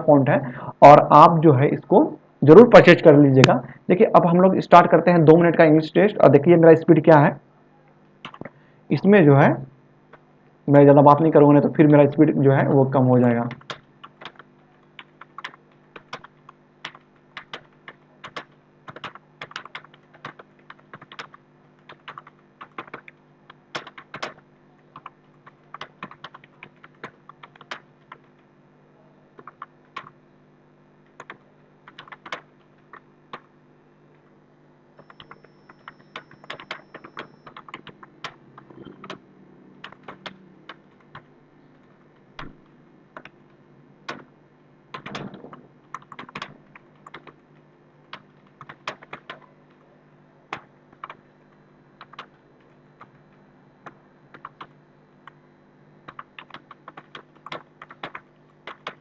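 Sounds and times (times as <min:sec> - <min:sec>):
faint steady hum: 0:00.0 - 0:59.0
keyboard key clicks: 0:45.0 - 0:47.3.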